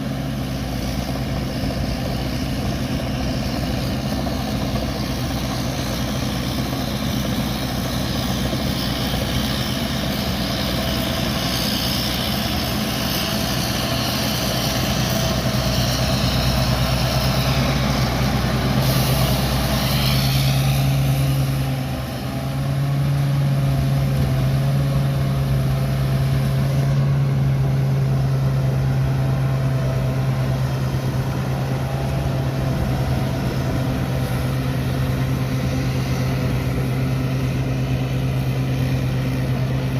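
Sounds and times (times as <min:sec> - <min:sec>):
combine harvester engine humming: 0:00.0 - 0:39.9
high hiss: 0:10.5 - 0:22.4.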